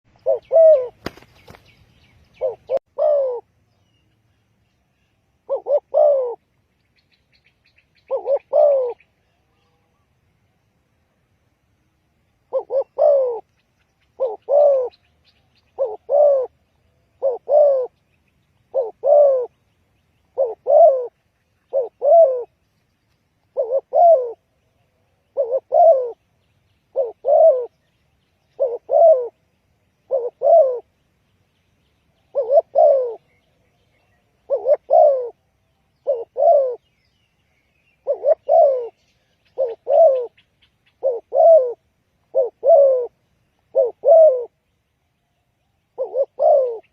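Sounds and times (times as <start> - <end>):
dove cooing: 0.1 - 3.5, 5.4 - 6.5, 8.0 - 9.2, 12.4 - 13.5, 14.1 - 18.0, 18.6 - 19.6, 20.2 - 22.6, 23.5 - 24.5, 25.2 - 26.2, 26.9 - 27.8, 28.4 - 29.4, 30.0 - 30.9, 32.2 - 37.0, 37.9 - 44.6, 46.0 - 46.9.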